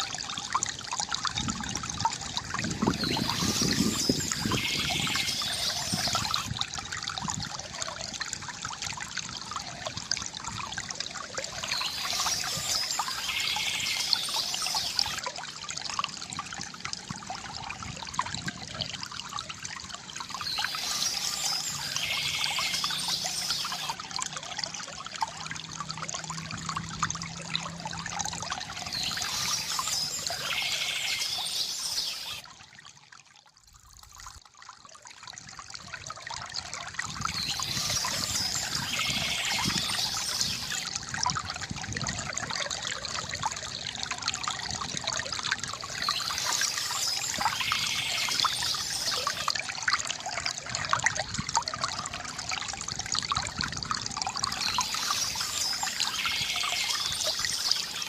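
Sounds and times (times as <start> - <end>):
river water gurgling: 0.0 - 58.0
birds chirping softly: 2.8 - 6.5, 11.4 - 15.2, 20.1 - 24.0, 28.1 - 32.4, 37.2 - 40.9, 45.7 - 49.5, 54.4 - 58.0.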